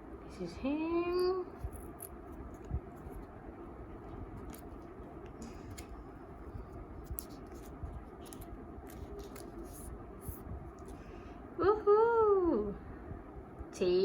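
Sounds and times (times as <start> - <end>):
low room hum: 0.0 - 14.0
parcel packaging clicks and scrapes: 1.6 - 11.0.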